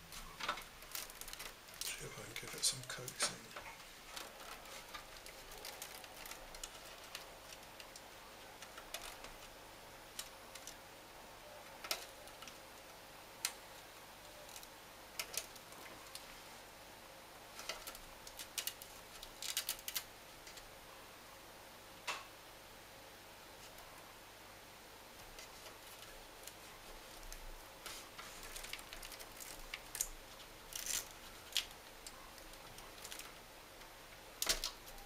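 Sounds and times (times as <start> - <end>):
faint steady hum: 0.0 - 35.0
cable clicking against computer case: 34.4 - 35.0.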